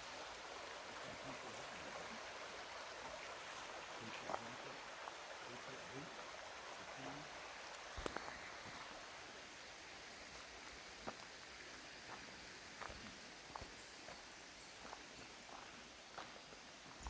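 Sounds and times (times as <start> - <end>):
steady background hiss: 0.0 - 17.0
crunching footsteps: 7.7 - 8.9, 12.1 - 14.2.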